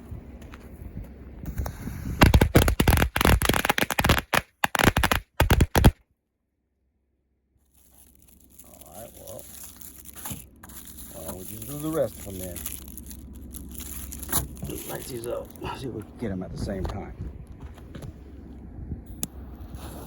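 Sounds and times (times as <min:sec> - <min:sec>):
firecrackers banging: 0:01.5 - 0:06.0.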